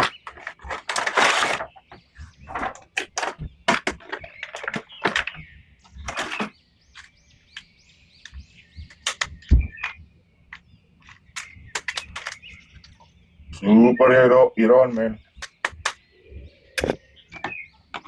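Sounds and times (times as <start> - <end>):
packaging rustling: 0.0 - 5.4, 11.0 - 13.0
plastic toys clicking and tapping: 2.6 - 5.4, 6.0 - 13.0.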